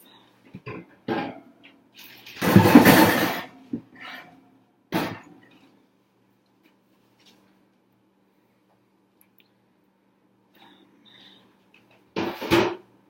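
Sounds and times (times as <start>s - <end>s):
containers knocking on shelves: 2.4s - 3.9s.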